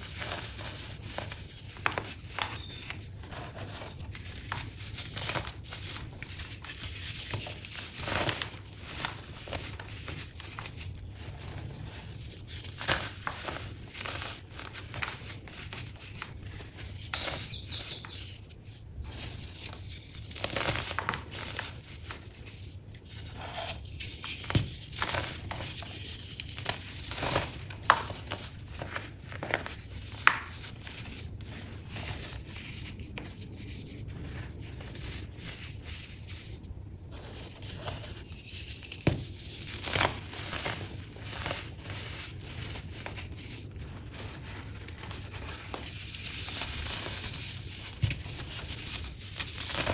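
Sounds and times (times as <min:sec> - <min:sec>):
baking soda crunching: 0:00.0 - 0:18.1, 0:37.1 - 0:49.9.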